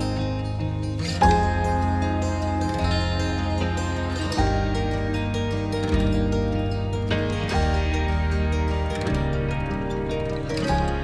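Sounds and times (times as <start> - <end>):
gentle instrumental music: 0.0 - 11.0.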